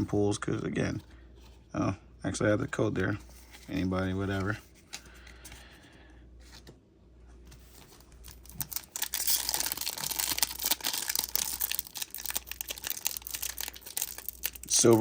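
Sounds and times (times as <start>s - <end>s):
foil wrapper crinkling and tearing: 8.1s - 15.0s.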